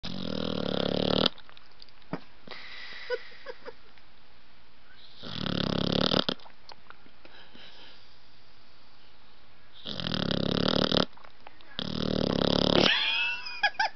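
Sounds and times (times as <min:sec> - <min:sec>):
puppy snoring: 0:00.0 - 0:01.4, 0:05.0 - 0:06.4, 0:09.7 - 0:11.2, 0:11.8 - 0:12.9.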